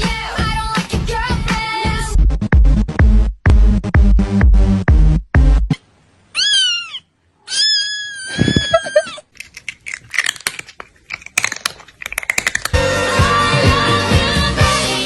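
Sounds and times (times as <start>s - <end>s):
cat meowing: 6.3s - 9.2s
sharp clicks and rustles: 9.3s - 12.8s.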